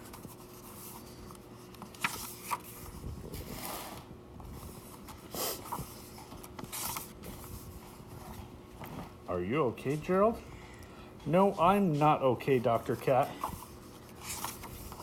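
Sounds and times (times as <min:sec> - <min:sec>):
paper pages turning: 0:00.0 - 0:08.4, 0:11.9 - 0:15.0.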